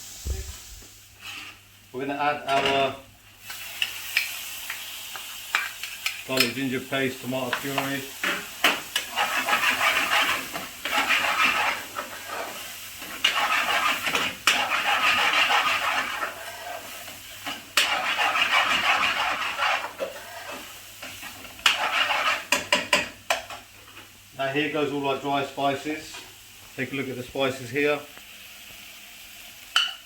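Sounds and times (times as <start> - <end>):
onions sizzling in oil: 0.0 - 1.9, 3.0 - 24.4, 28.0 - 30.0
spoon knocking against pan: 22.5 - 23.5.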